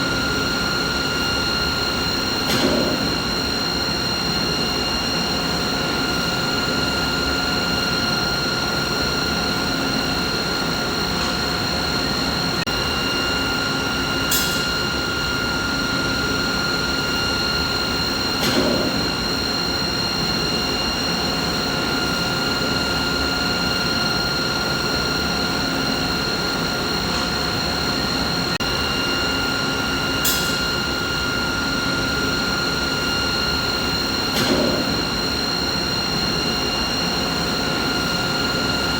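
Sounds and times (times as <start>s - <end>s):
machinery hum with whining tones: 0.0s - 38.9s.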